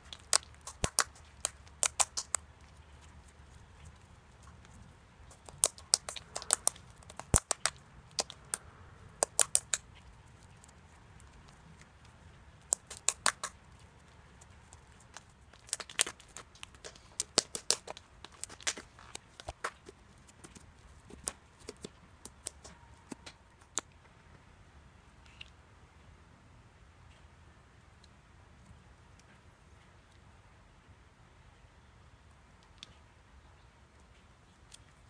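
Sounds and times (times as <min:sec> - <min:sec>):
slime squished wet clicks and pops: 0:00.2 - 0:02.4, 0:09.2 - 0:09.8, 0:12.7 - 0:13.5.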